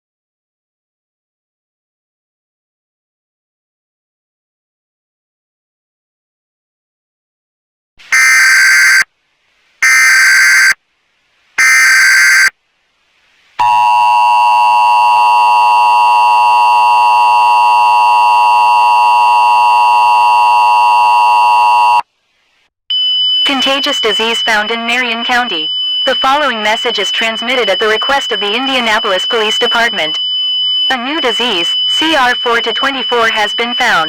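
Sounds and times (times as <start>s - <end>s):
screeching data bursts: 8.2s - 9.0s, 9.8s - 10.8s, 11.6s - 12.5s
two-tone attention signal: 8.2s - 9.0s, 9.8s - 10.8s, 11.6s - 12.5s.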